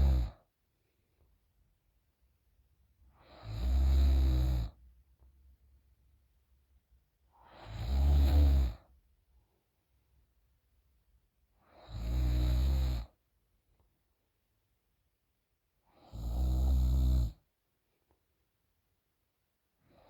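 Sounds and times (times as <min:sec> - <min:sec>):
woman snoring deeply: 0:00.0 - 0:00.4, 0:03.2 - 0:04.8, 0:07.5 - 0:08.8, 0:11.7 - 0:13.1, 0:16.0 - 0:17.4
quiet breaths: 0:02.9 - 0:05.5, 0:07.2 - 0:10.0, 0:19.7 - 0:20.0.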